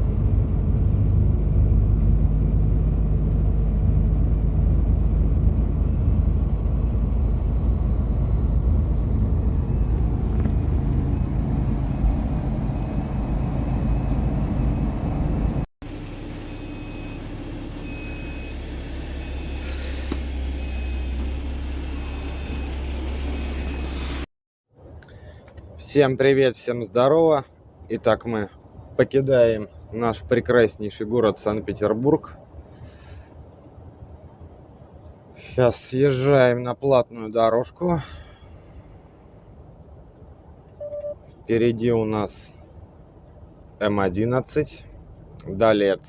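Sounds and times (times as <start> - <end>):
truck engine rumbling: 0.0 - 24.3, 38.2 - 46.0
short beeps: 6.1 - 9.2, 40.8 - 41.3.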